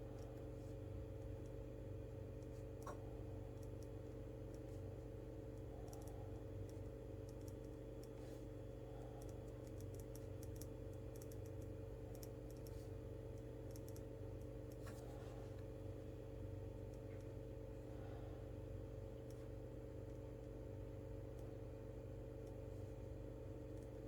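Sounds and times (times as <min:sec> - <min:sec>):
low electrical hum: 0:00.0 - 0:24.0
light irregular clicks: 0:00.1 - 0:00.4, 0:02.4 - 0:04.8, 0:05.5 - 0:15.0.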